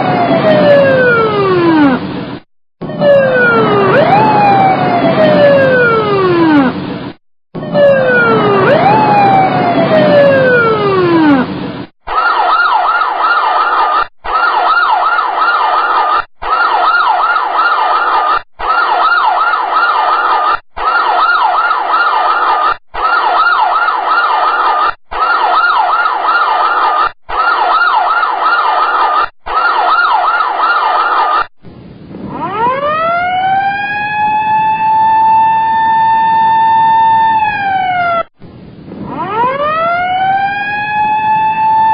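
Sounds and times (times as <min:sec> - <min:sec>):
fast-warbling siren: 0:00.0 - 0:02.1, 0:02.8 - 0:06.8, 0:07.6 - 0:31.5, 0:32.2 - 0:38.3, 0:39.0 - 0:41.9
siren gliding downward: 0:00.0 - 0:02.1, 0:02.8 - 0:06.8, 0:07.6 - 0:31.5, 0:32.2 - 0:38.3, 0:39.0 - 0:41.9
siren winding up to steady tone: 0:32.2 - 0:38.3, 0:39.0 - 0:41.9.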